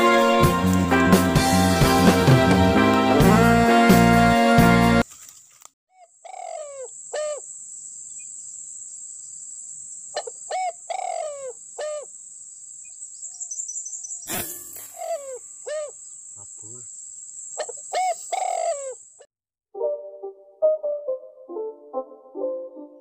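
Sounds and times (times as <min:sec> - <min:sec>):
background music: 0:00.0 - 0:05.0, 0:19.8 - 0:23.0
high insect drone: 0:06.3 - 0:19.3
pigeons whistled calls: 0:13.2 - 0:16.0, 0:17.6 - 0:19.0.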